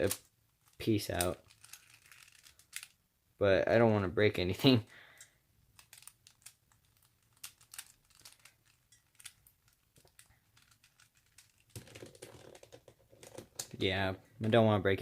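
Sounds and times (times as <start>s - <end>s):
speed cube plastic clicks: 1.1s - 3.0s, 5.8s - 13.8s.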